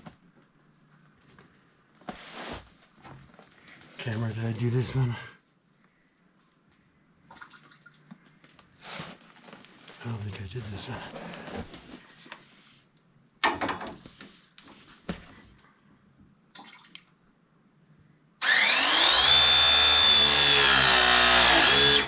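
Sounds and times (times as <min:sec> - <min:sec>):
power tool motor whining: 0:18.4 - 0:22.0.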